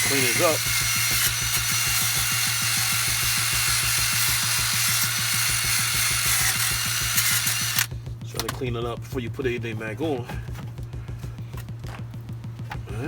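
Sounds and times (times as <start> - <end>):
wire brush drill grinding metal: 0.0 - 7.9.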